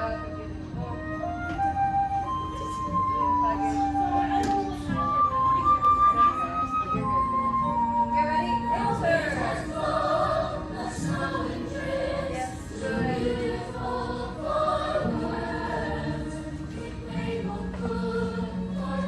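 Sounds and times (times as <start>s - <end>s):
instrumental accompaniment: 0.0s - 19.0s
young voices singing in chorus: 8.6s - 19.0s.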